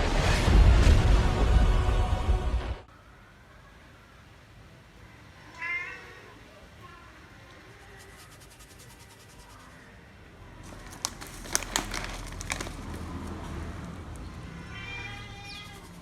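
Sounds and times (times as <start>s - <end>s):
sharp clicks and crinkling: 10.6s - 14.4s.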